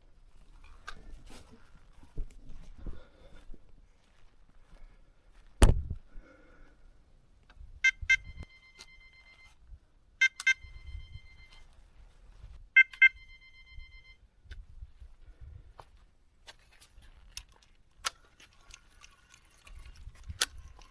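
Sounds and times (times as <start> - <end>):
loud thump: 5.6 - 5.8
bite alarm double bleeps: 7.8 - 9.5, 10.2 - 11.7, 12.8 - 14.2.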